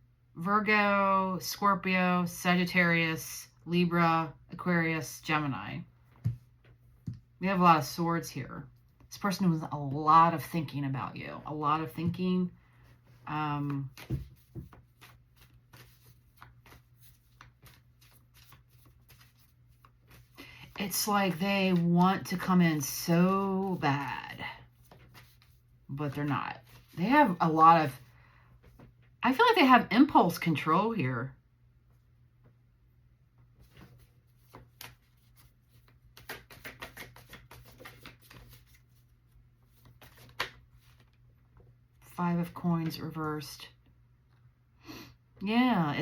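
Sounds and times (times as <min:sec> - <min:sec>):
cards being shuffled: 0:13.6 - 0:23.8, 0:33.6 - 0:41.2.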